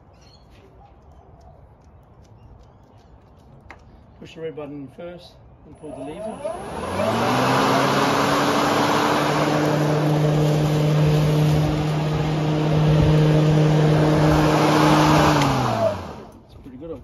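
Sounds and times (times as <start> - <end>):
electric lawn mower motor humming: 5.8 - 16.4.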